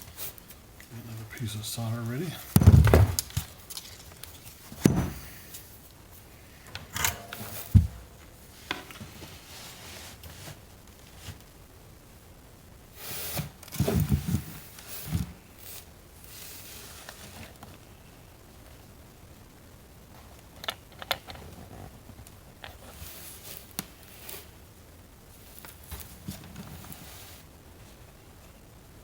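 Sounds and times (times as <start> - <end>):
handling rustles: 2.2 - 5.9.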